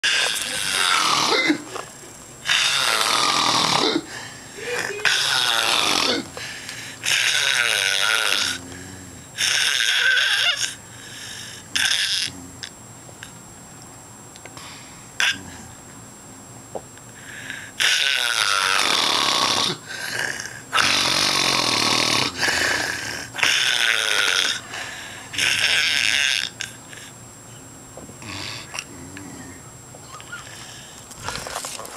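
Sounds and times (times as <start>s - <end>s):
person snoring loudly: 0.0s - 1.8s, 2.4s - 10.8s, 11.6s - 12.7s, 15.2s - 15.8s, 17.7s - 27.0s, 28.2s - 29.6s
quiet breathing: 6.3s - 7.0s, 10.8s - 11.8s, 17.1s - 17.8s, 24.6s - 25.4s, 30.3s - 31.6s.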